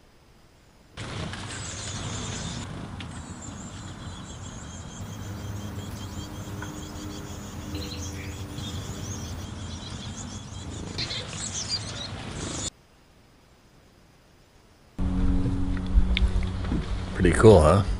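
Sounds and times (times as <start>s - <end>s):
nestling birds chirping: 0.5s - 12.7s
low rumble: 15.0s - 17.9s.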